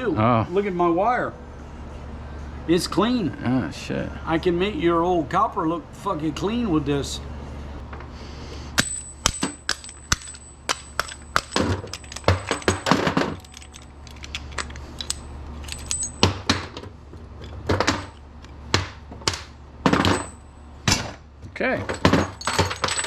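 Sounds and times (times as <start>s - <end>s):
steady low hum: 0.0s - 23.0s
metal scrap clinking: 8.8s - 18.7s, 21.9s - 23.0s.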